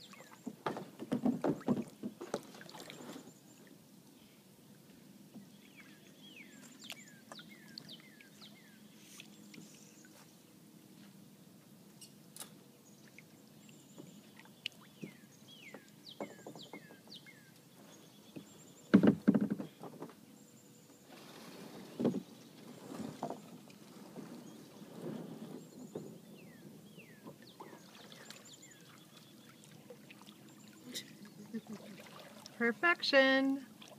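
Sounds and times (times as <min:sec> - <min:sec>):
kayak knocking and scraping: 0:00.4 - 0:03.3, 0:15.0 - 0:17.2, 0:18.4 - 0:20.2, 0:21.1 - 0:28.4
bird chirping: 0:12.8 - 0:19.0, 0:24.4 - 0:29.8.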